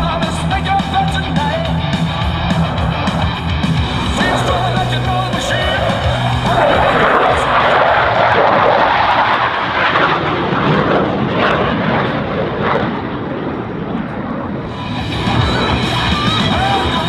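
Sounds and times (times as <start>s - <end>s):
jet engines roaring overhead: 0.0s - 17.0s.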